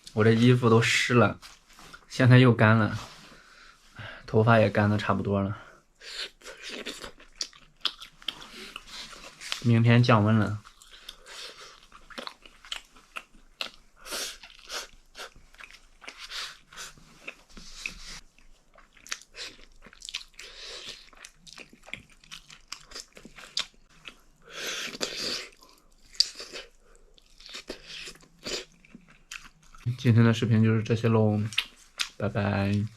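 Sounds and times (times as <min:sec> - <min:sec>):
crunchy chewing of food: 0:06.2 - 0:09.7, 0:10.6 - 0:29.9.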